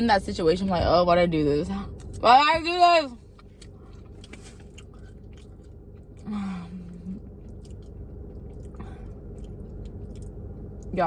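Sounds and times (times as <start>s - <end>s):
closed-mouth hum: 0.0s - 11.0s
person chewing food: 3.2s - 10.9s.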